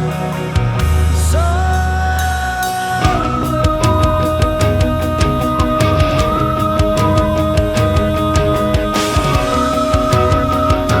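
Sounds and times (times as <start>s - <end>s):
heavy rock music: 0.0s - 11.0s.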